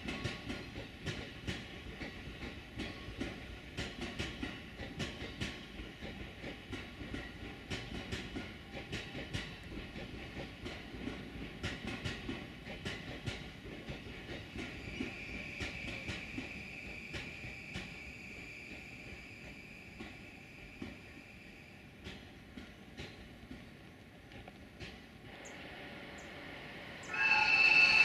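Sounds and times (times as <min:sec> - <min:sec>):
train wheels clicking over rail joints: 0:00.0 - 0:26.4
steady high tone: 0:27.1 - 0:28.0.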